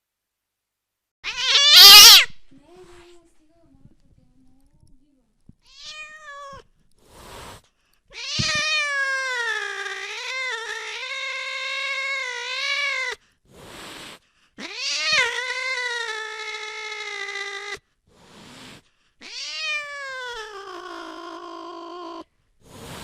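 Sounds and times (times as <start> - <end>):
cat meowing: 1.2 - 2.4, 5.6 - 6.7, 8.1 - 13.2, 14.6 - 17.8, 19.2 - 22.3.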